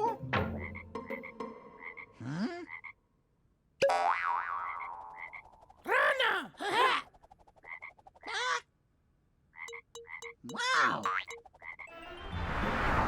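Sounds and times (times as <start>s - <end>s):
frog croaking: 0.6s - 3.0s, 4.6s - 5.8s, 6.9s - 8.6s, 9.5s - 11.9s.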